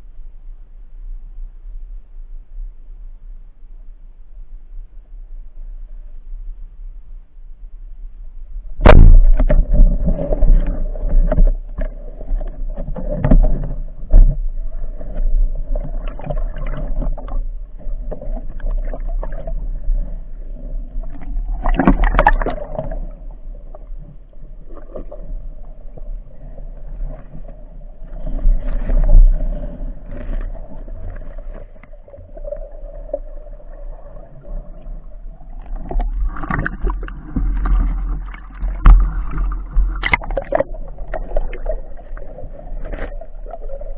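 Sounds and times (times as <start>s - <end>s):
faint hum: 0.0s - 43.9s
muffled underwater sloshing: 8.5s - 43.9s
water splash: 8.8s - 20.2s, 21.0s - 23.3s, 28.1s - 43.9s.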